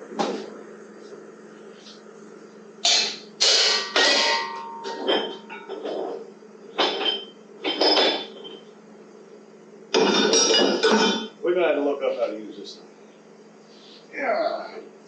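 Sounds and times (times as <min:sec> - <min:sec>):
metallic clanks and creaks: 0:03.8 - 0:08.6.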